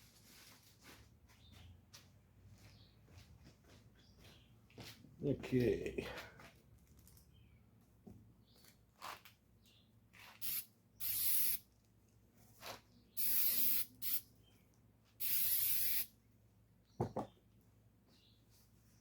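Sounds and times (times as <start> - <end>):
aerosol can spraying: 10.3 - 11.6, 13.2 - 14.2, 15.2 - 16.1.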